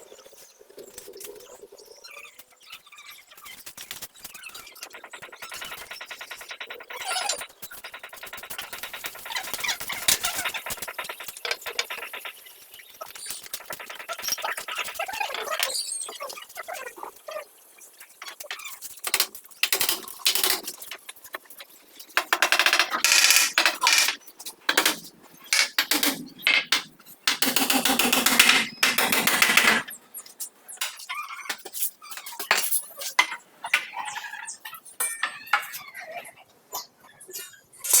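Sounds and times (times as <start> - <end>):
knocks and clinks on wood: 5.1 - 12.4, 22.2 - 29.9, 30.8 - 34.0.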